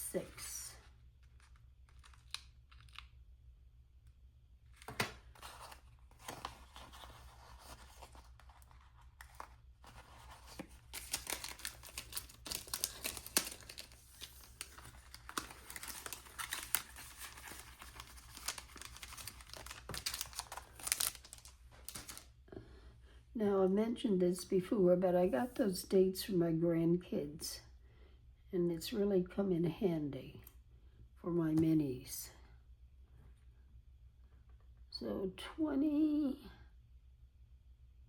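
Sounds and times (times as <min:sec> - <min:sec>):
paper crinkling: 0:00.4 - 0:03.1, 0:04.7 - 0:22.3.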